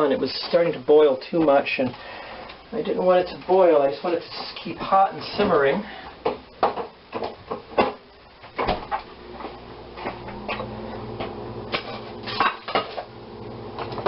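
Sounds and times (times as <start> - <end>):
low steady hum: 0.0 - 14.0
cookware and utensils clattering: 11.7 - 13.1.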